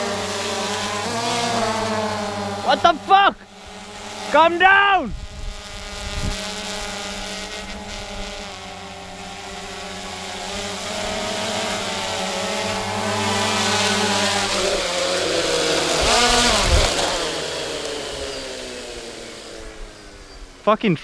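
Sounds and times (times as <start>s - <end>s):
motor running: 0.0s - 20.7s.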